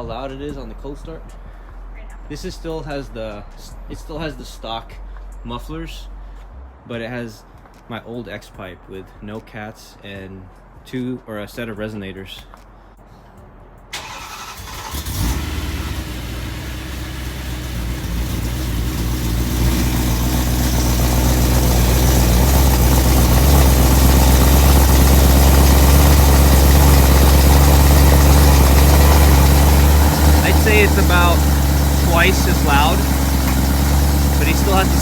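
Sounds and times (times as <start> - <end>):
car engine cold start idle: 13.9 - 35.0.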